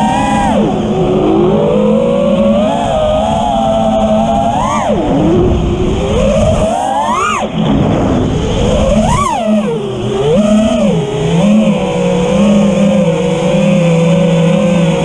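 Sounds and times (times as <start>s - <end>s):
quadcopter motors whining: 0.0s - 15.0s.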